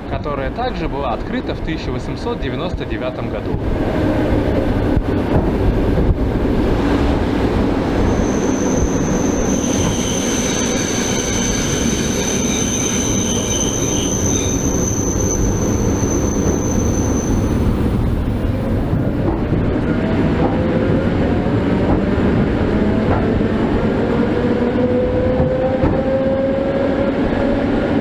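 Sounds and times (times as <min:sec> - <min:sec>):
train wheels running on rails: 0:01.0 - 0:28.0
high wheel squeal: 0:08.0 - 0:17.7.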